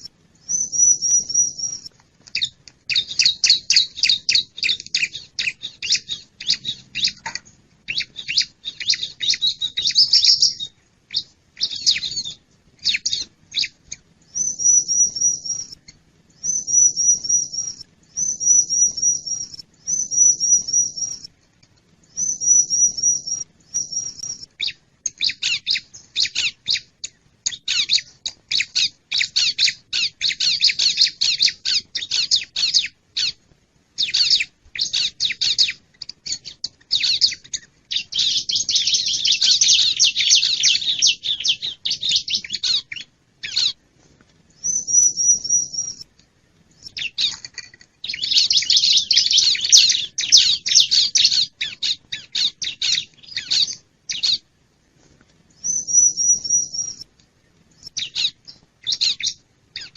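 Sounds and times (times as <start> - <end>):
bird high trill: 0.0 - 7.2, 14.3 - 15.8, 44.6 - 46.0, 48.0 - 54.4, 55.6 - 57.0
bird dense chattering: 0.0 - 15.8, 16.4 - 21.3, 34.0 - 43.8, 46.8 - 54.4
bird high chirps: 0.0 - 21.3, 22.1 - 33.4, 34.0 - 43.8, 44.6 - 46.1, 46.7 - 54.5, 55.6 - 57.1, 57.8 - 59.9.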